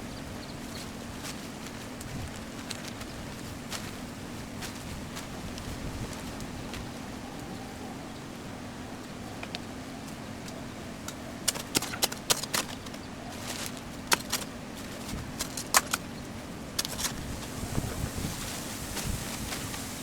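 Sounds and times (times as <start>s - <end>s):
shovel scraping stony ground: 16.8s - 20.0s.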